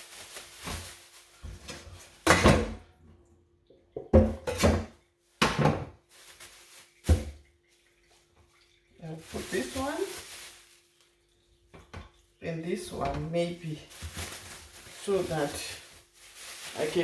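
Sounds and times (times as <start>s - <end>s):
loud knocks on kitchen counter: 4.0s - 6.0s.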